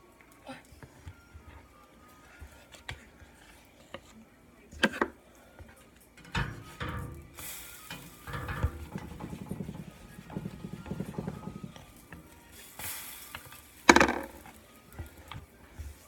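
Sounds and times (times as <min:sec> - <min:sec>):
spoon stirring batter in bowl: 0:00.8 - 0:04.2, 0:05.5 - 0:16.0.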